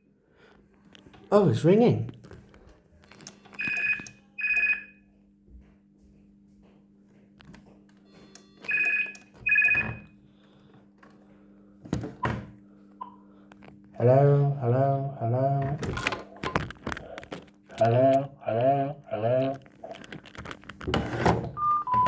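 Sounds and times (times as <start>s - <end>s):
low steady hum: 0.0s - 22.0s
cordless phone ringing: 3.0s - 5.1s, 8.0s - 10.2s, 21.6s - 22.0s.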